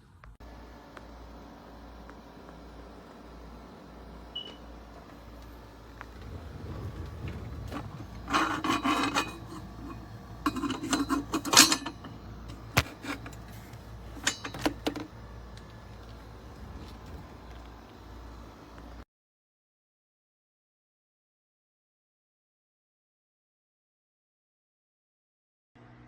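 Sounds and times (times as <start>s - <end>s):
hard objects rattling and scraping: 6.0s - 17.7s.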